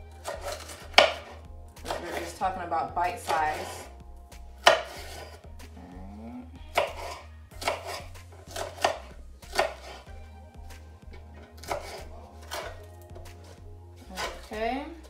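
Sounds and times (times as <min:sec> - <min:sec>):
knife chopping on cutting board: 0:00.2 - 0:02.4, 0:03.2 - 0:03.9, 0:04.6 - 0:05.7, 0:06.7 - 0:14.6.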